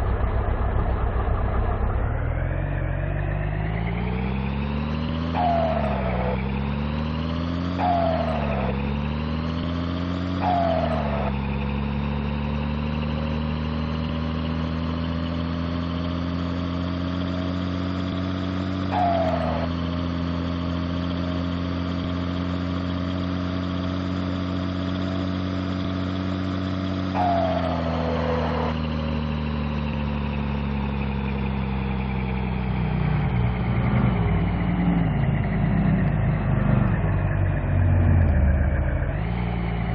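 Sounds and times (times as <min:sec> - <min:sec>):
diesel truck engine revving: 0:00.0 - 0:39.9
high turbo whistle: 0:27.1 - 0:29.4.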